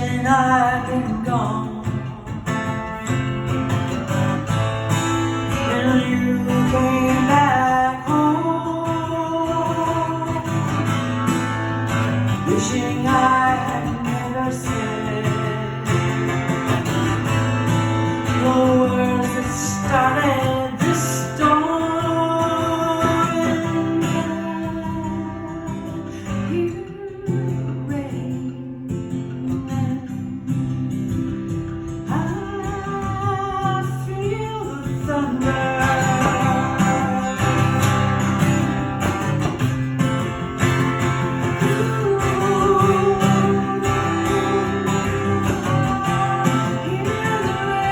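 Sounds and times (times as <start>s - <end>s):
acoustic guitar playing: 0.0s - 47.9s
person singing: 5.6s - 10.9s, 12.4s - 16.0s, 32.0s - 39.2s, 41.3s - 47.9s.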